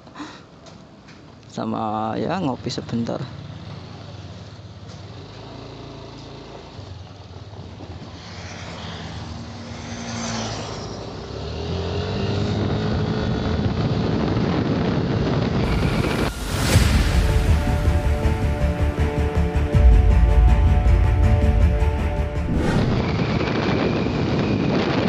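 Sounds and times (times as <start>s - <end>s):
motorcycle engine pulling away: 3.3s - 16.3s.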